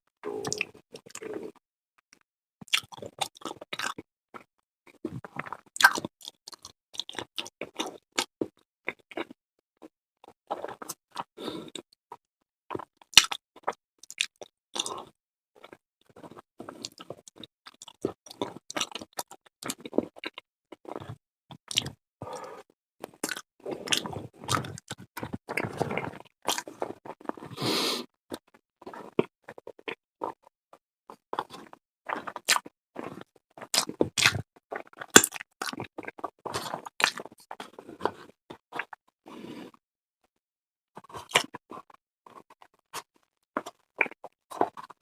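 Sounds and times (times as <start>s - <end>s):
person chewing: 0.3s - 1.6s, 2.6s - 4.0s, 5.0s - 9.4s, 10.2s - 11.8s, 12.7s - 30.3s, 31.1s - 38.9s, 41.0s - 44.9s
wet mouth clicks and smacks: 35.2s - 35.8s.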